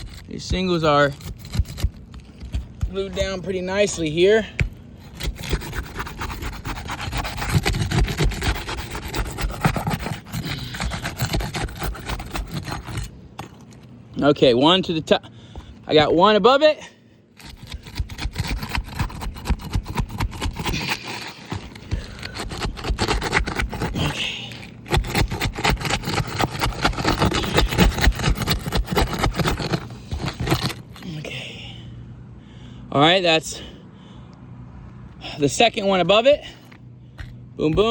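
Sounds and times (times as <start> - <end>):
shingle tab tearing loose: 0.0 - 14.0, 17.4 - 31.1
tool scraping under shingle: 0.0 - 16.6, 17.3 - 31.4, 35.2 - 37.9.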